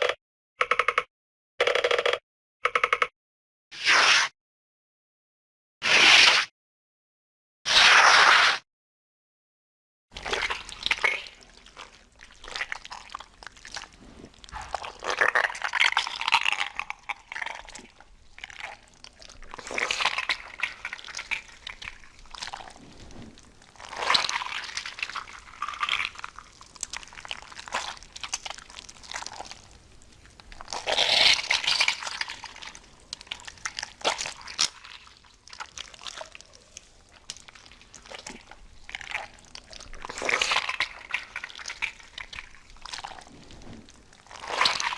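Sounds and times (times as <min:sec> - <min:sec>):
crunching and crackling clicks: 0:10.2 - 0:44.9.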